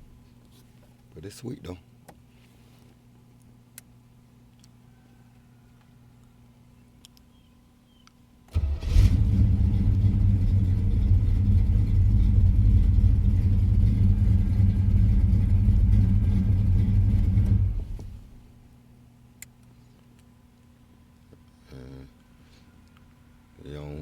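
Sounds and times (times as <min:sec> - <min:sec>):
car engine starting and running: 0:08.5 - 0:18.5.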